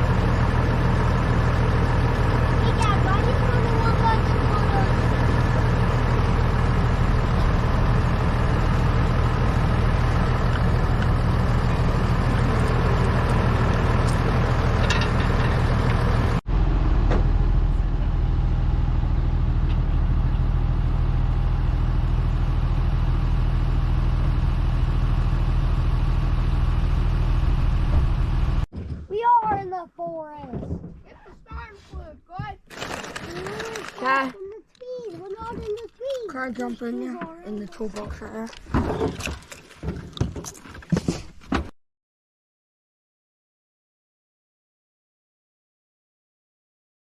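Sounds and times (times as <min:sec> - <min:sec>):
vehicle engine running: 0:00.0 - 0:28.7.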